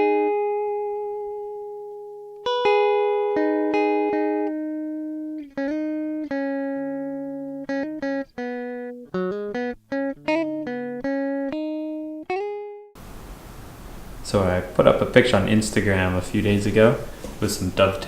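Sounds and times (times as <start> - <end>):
solo guitar picking slow melody: 0.0 - 13.0.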